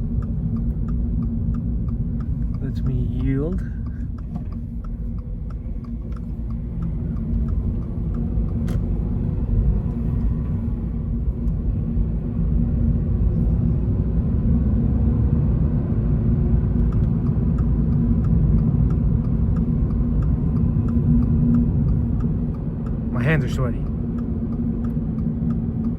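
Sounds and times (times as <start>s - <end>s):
faint regular ticking: 0.0s - 10.3s, 16.7s - 25.9s
car engine rumble: 0.0s - 25.9s
road noise: 0.0s - 25.9s.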